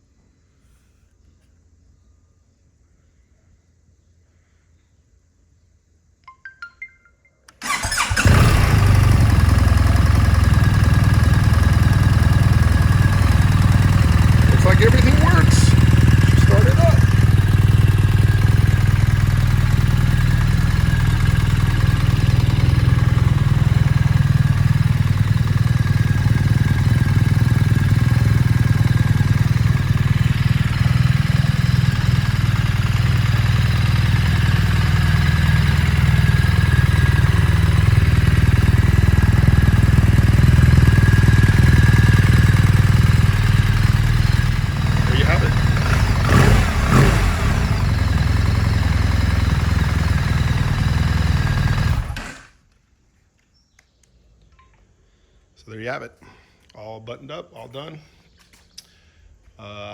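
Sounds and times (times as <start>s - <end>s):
motorcycle engine idling: 7.6s - 52.6s.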